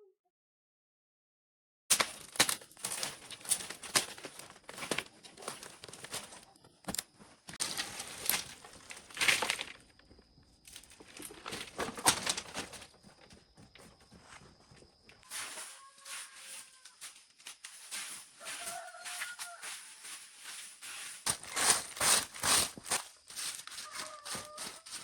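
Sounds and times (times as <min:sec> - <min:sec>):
crackling and rustling with snaps: 0:01.9 - 0:13.2, 0:16.5 - 0:25.0.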